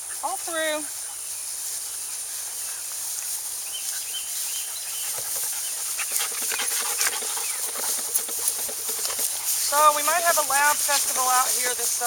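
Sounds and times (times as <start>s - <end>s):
bird chirping: 0.0s - 11.8s
insects hissing: 0.0s - 12.0s
dog panting: 3.8s - 12.0s.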